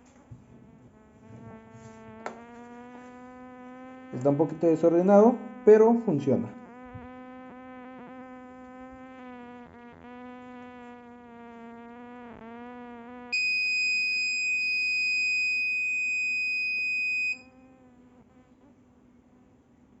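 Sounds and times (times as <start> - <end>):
low buzz: 0.0 - 17.8
high-pitched alarm tone: 13.4 - 17.4.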